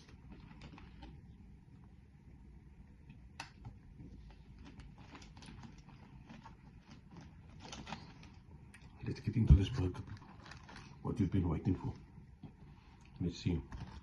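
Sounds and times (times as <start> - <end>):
chewing clicks and crackles: 3.0 - 9.0.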